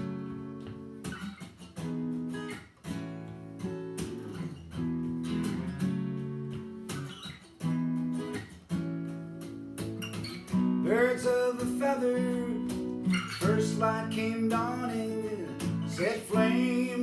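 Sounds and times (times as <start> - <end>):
acoustic guitar strumming chords: 0.0 - 17.0.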